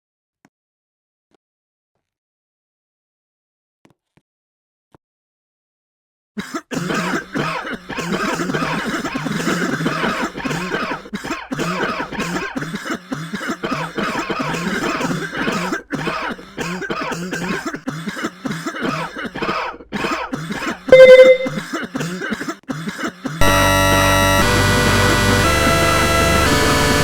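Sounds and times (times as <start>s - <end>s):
person coughing: 6.4s - 20.9s, 21.5s - 23.4s
loud short beep: 20.9s - 21.6s
loud synthesized music: 23.4s - 27.0s.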